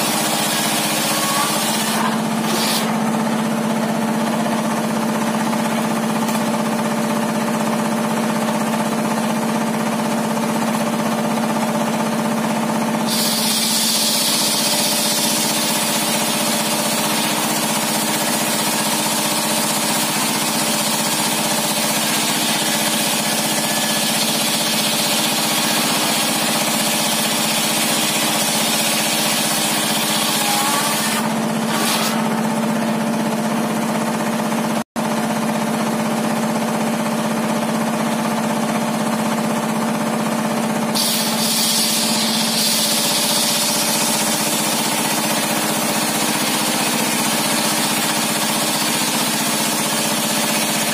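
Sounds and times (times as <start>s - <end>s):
saw blade cutting hiss: 0.0s - 2.9s, 13.1s - 18.8s, 21.1s - 32.2s, 41.0s - 50.9s
table saw drone: 0.0s - 3.0s, 13.1s - 32.4s, 41.0s - 50.9s.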